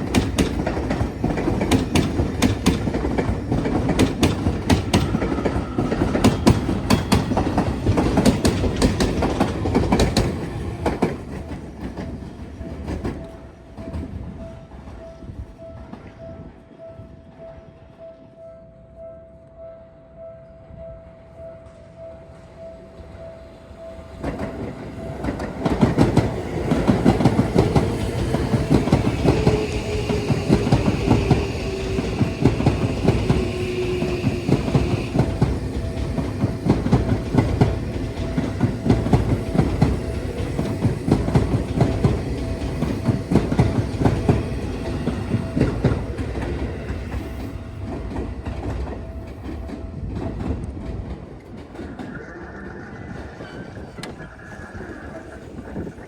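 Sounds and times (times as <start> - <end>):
train wheels clattering over rail joints: 0.0 - 14.1, 24.2 - 52.2.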